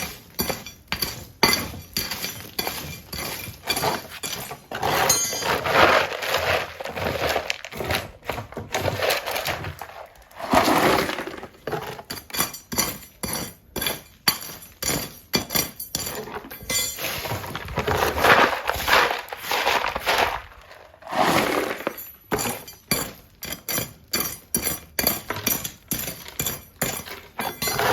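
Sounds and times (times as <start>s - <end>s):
metal tools striking concrete: 0.0s - 5.8s, 10.5s - 18.2s, 21.3s - 27.9s
tools scraping rubble: 0.0s - 27.9s.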